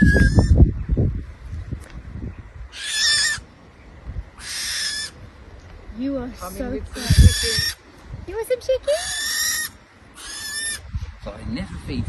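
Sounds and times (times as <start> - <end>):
bird of prey screeching: 0.0 - 0.6, 2.7 - 3.5, 4.4 - 5.2, 6.4 - 7.8, 8.8 - 10.9
low muffled noise: 10.8 - 12.0.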